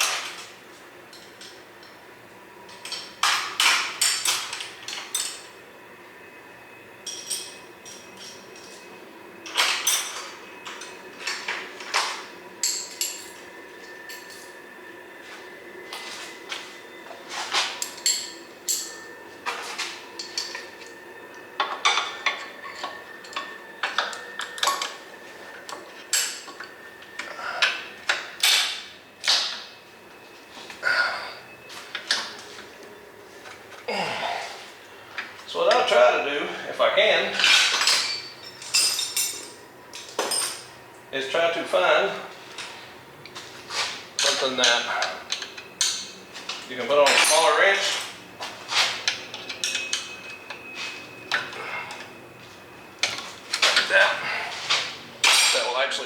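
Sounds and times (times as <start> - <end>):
steel tools clinking against bolts: 12.6 - 13.4, 17.7 - 19.1, 37.3 - 40.8, 44.2 - 52.2, 55.2 - 55.8
metal hand tools clanking: 55.2 - 55.7.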